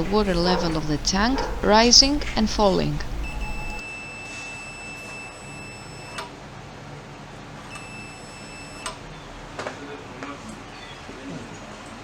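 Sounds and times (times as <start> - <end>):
multimeter continuity beep: 0.1 - 6.2.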